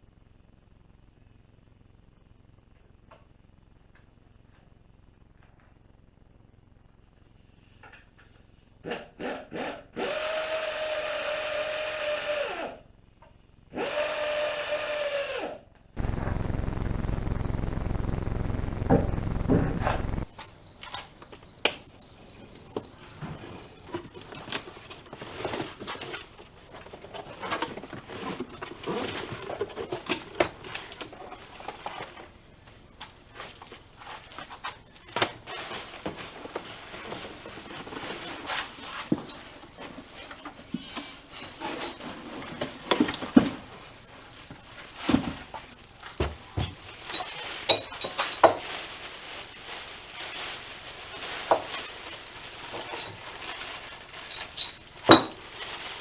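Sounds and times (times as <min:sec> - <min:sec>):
insects pulsing chirp: 0:16.0 - 0:56.0
insects trilling: 0:16.0 - 0:56.0.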